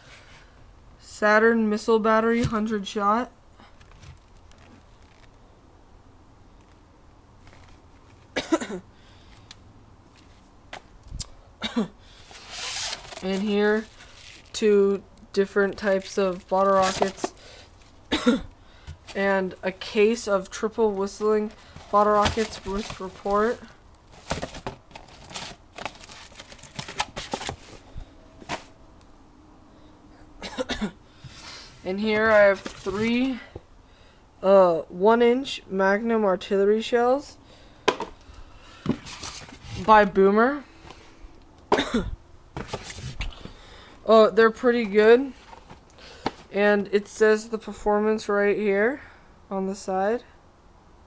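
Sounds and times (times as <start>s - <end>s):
cardboard and plastic rustling: 3.7s - 5.4s, 7.4s - 8.4s, 12.2s - 14.8s, 15.7s - 18.0s, 18.8s - 28.8s, 31.2s - 33.4s, 38.8s - 40.2s, 42.5s - 43.6s, 44.7s - 46.6s
man clearing throat: 18.1s - 18.5s, 41.7s - 42.2s.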